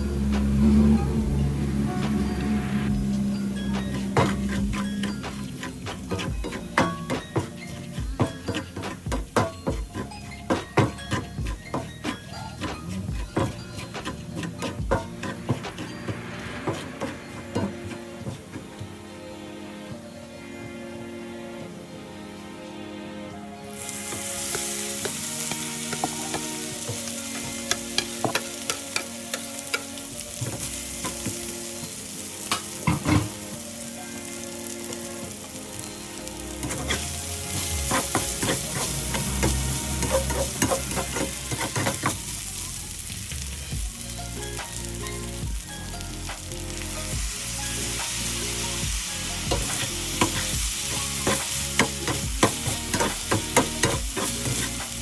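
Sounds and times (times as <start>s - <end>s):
rice sizzling in a hot pan: 1.5s - 23.0s, 23.6s - 55.0s
spatula scraping a pan: 3.1s - 18.7s, 23.7s - 33.6s, 36.1s - 42.4s, 49.4s - 55.0s.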